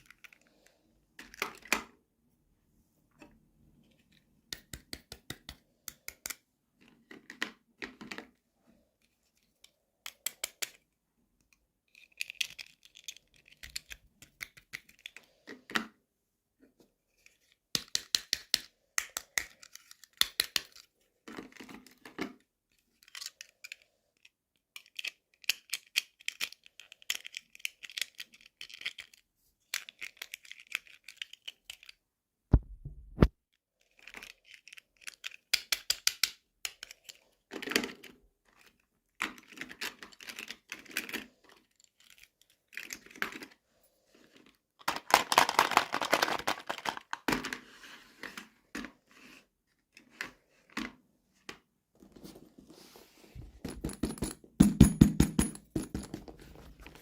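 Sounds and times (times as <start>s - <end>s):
small plastic pieces clicking: 9.6s - 10.8s, 11.4s - 15.7s, 17.7s - 22.2s, 23.0s - 32.0s, 33.9s - 43.5s, 44.8s - 47.4s.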